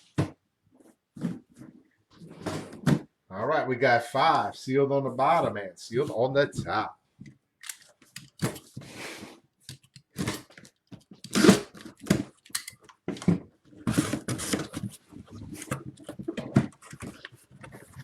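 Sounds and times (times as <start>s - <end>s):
cardboard box being cut and torn: 11.3s - 11.8s.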